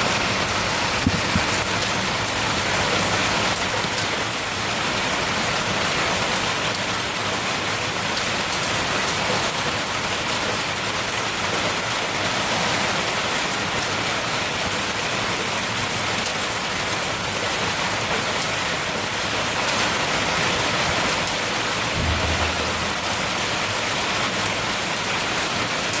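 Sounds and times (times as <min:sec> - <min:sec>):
hailstones pounding on roofs: 0:00.1 - 0:11.7
low rumble: 0:22.0 - 0:23.7.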